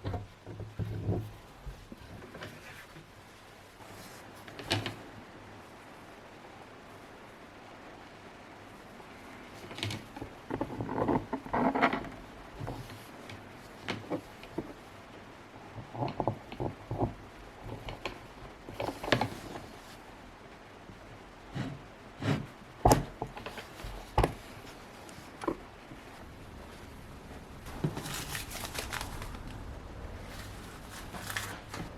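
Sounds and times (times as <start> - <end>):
hands handling hard plastic parts: 21.6 - 31.9.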